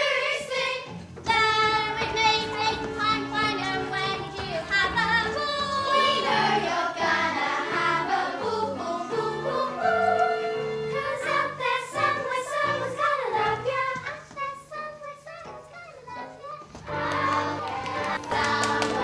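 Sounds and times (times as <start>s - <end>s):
chorus singing: 0.0s - 14.0s, 16.9s - 19.0s
instrumental accompaniment: 0.0s - 14.7s.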